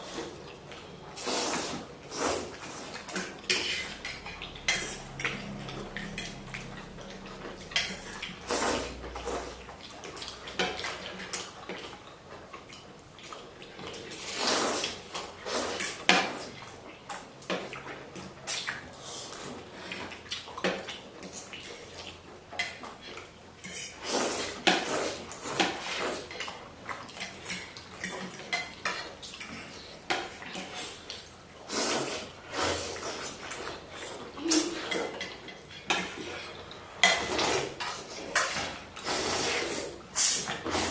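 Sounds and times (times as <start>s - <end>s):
slurping: 1.2s - 16.8s, 23.1s - 40.9s
utensils clinking on a bowl: 33.4s - 38.8s.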